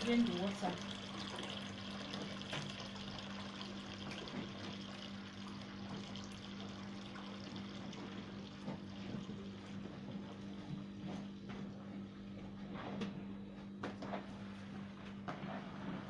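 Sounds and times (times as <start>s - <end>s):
water draining from washing machine: 0.0s - 11.9s.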